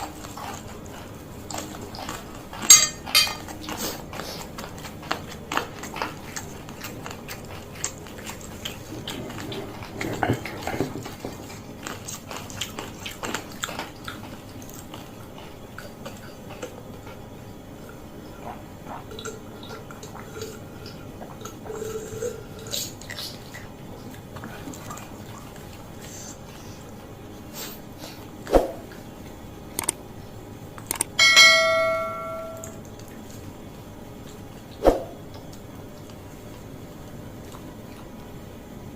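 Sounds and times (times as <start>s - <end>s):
metal tableware ringing: 2.7s - 3.4s, 31.2s - 32.8s
eating clicks and handling: 29.7s - 30.0s, 30.8s - 31.2s.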